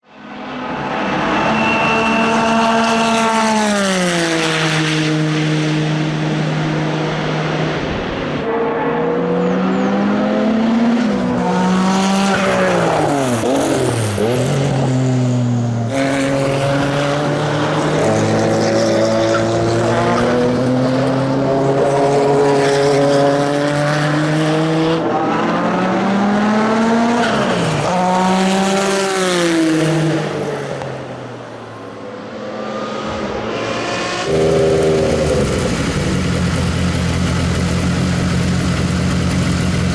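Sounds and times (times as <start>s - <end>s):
racing car engine revving: 32.4s - 39.9s.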